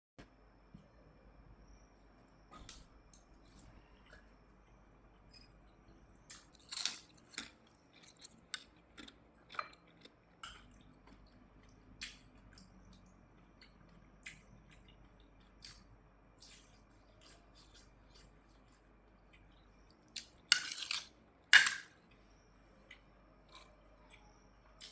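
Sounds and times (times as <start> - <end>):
person chewing crunchy fish: 6.2 - 21.2.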